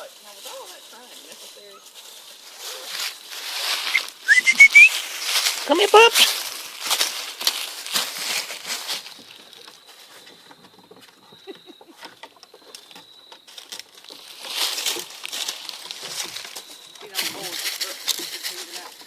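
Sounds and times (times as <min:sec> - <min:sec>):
footsteps pattering and rustling: 0:00.0 - 0:19.0
faint high whistle-like tone: 0:03.9 - 0:05.0.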